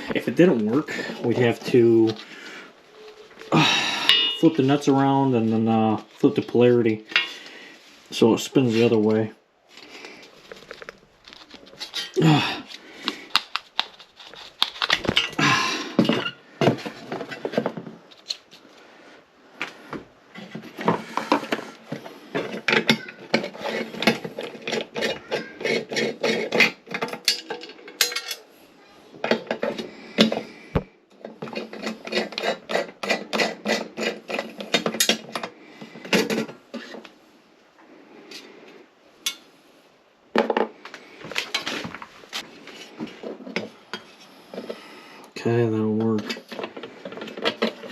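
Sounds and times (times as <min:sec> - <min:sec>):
metal parts clicking and scraping: 0:10.2 - 0:18.8, 0:22.3 - 0:28.5, 0:46.0 - 0:47.9.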